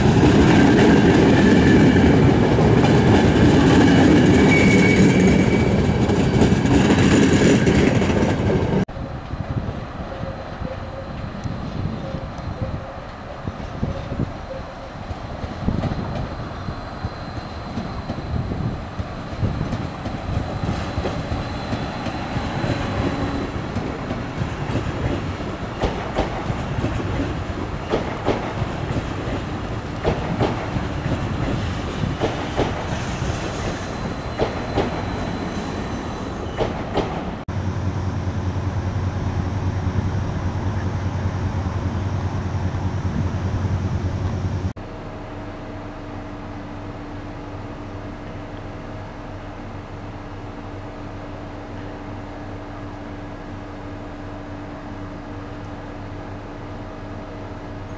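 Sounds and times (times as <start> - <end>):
train wheels clicking over rail joints: 0.0 - 8.8, 15.0 - 35.5, 36.4 - 37.4
high wheel squeal: 4.2 - 6.0, 10.0 - 23.7, 32.9 - 36.6.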